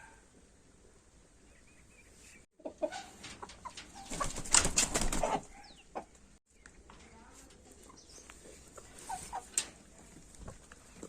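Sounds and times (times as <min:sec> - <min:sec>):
chicken wings flapping: 0:03.2 - 0:05.5.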